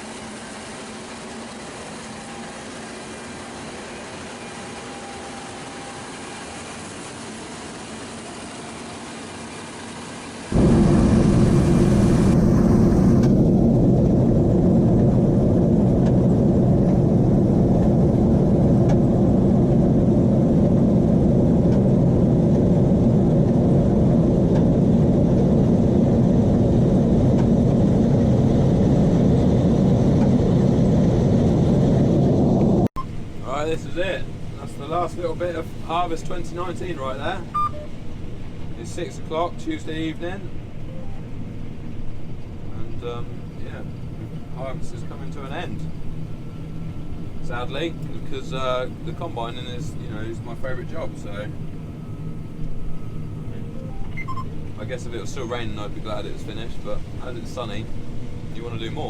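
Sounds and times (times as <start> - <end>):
combine harvester running: 0.0 - 59.0.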